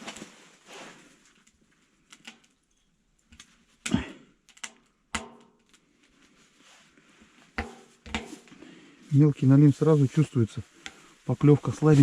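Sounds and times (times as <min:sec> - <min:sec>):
sharp clicks and small knocks: 0:02.1 - 0:05.9, 0:07.6 - 0:08.6.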